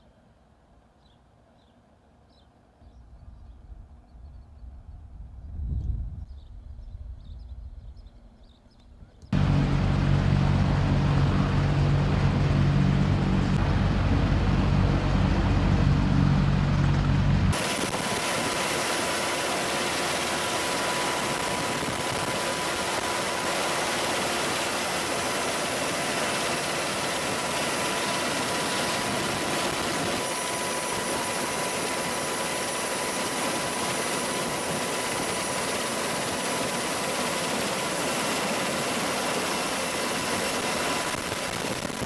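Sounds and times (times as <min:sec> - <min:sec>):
helicopter turbine engines running: 0:09.2 - 0:42.0
high turbine whines: 0:09.3 - 0:42.0.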